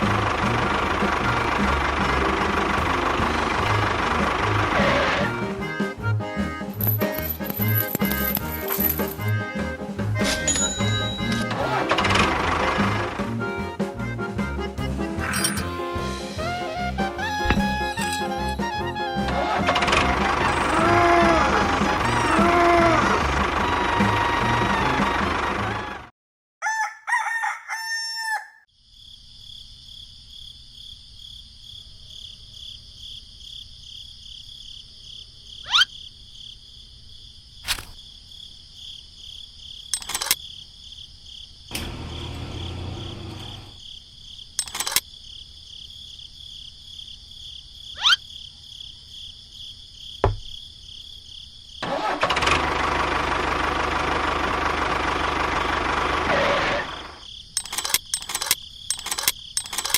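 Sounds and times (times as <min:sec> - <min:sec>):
rooster crowing: 0:26.6 - 0:28.7.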